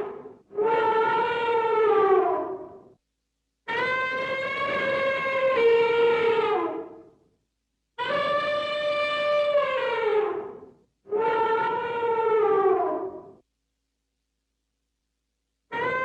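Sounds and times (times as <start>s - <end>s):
elephant trumpeting: 3.7s - 7.0s, 8.0s - 13.3s.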